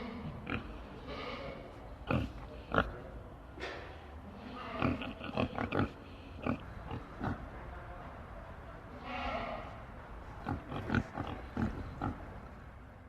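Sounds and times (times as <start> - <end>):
pigs grunting: 0.0 - 0.8, 2.0 - 3.0, 4.7 - 7.5, 10.4 - 12.4.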